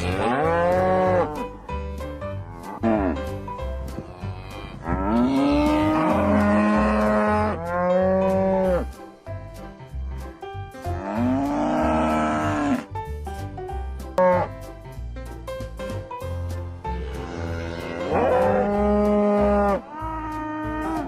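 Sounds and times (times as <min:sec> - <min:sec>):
cattle mooing: 0:00.0 - 0:01.4, 0:04.1 - 0:08.8, 0:11.0 - 0:12.9, 0:17.1 - 0:21.0
music with steady beat: 0:00.0 - 0:21.0.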